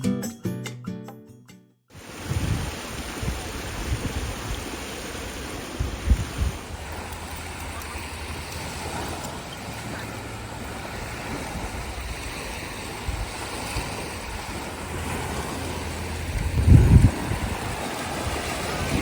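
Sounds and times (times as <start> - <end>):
sea waves washing in: 1.9 - 19.0
wind buffeting microphone: 2.0 - 19.0.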